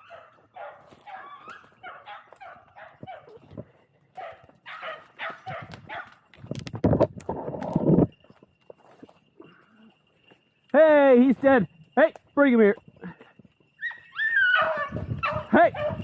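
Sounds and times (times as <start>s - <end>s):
dogs baying and yelping: 0.0s - 6.3s, 13.0s - 16.0s.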